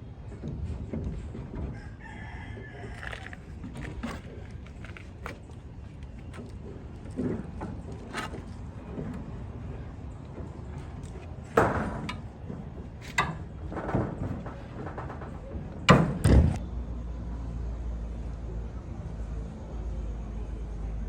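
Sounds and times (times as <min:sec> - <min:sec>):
knocks and thuds: 0:10.4 - 0:16.6.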